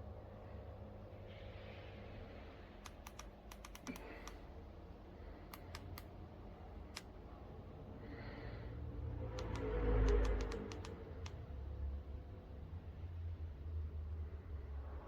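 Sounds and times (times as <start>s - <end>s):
low steady hum: 0.0s - 15.0s
light clicks and taps: 2.8s - 4.4s, 9.4s - 11.4s.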